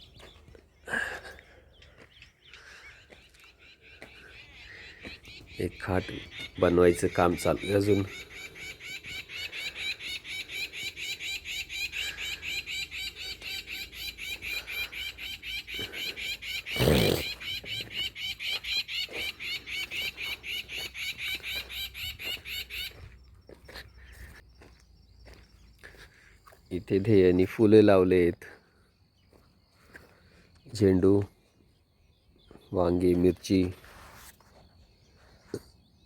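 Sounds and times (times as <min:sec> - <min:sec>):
small bird chirping: 0:00.0 - 0:27.5.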